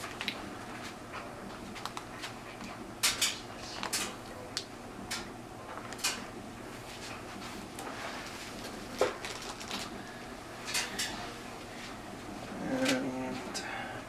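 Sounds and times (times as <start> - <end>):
packing rustling and scraping: 8.0 - 9.9.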